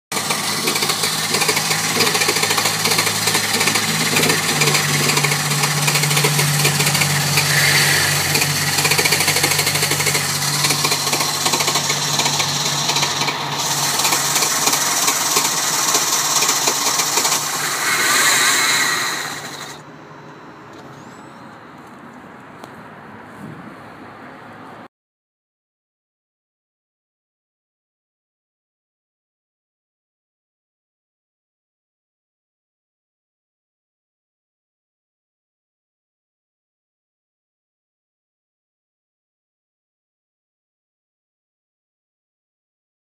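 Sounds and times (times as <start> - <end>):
engine cranking on starter: 0.1 - 19.8.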